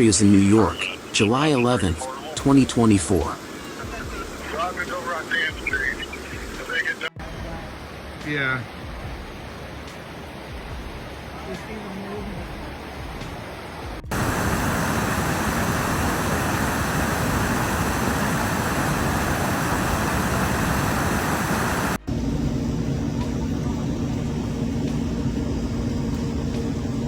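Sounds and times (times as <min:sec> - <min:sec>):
water rushing: 0:00.0 - 0:22.1
low motor hum: 0:14.0 - 0:27.0.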